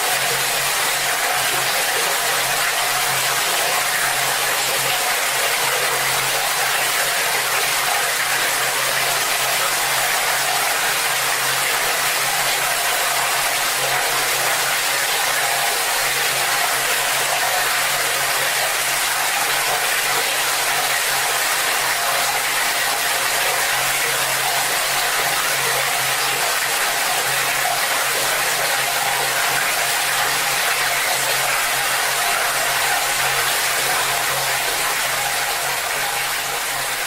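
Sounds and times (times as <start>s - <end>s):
tap water pouring into bucket: 0.0s - 37.0s.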